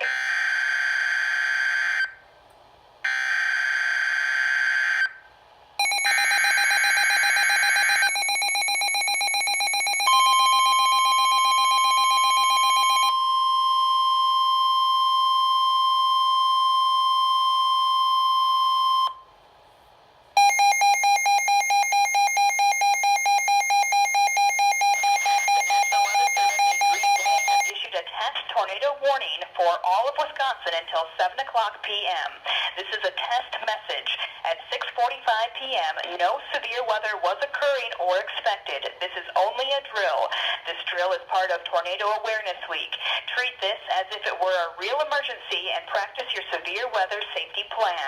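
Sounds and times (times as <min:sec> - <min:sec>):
steady warning alarm tone: 0:00.0 - 0:02.2, 0:03.1 - 0:05.2, 0:05.8 - 0:19.2, 0:20.4 - 0:27.7
radio alert beeping: 0:20.4 - 0:27.8.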